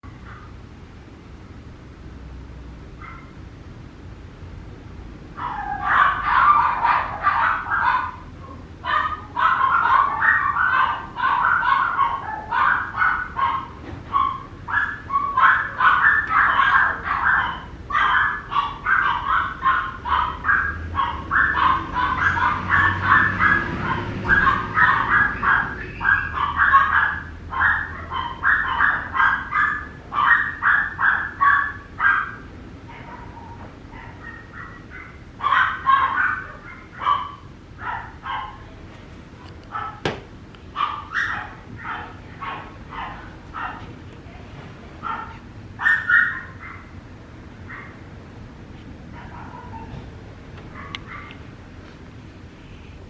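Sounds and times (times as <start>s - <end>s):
puppy yelping and whining: 5.4s - 38.6s, 40.8s - 43.9s, 45.0s - 47.0s, 49.2s - 50.0s, 50.7s - 51.4s.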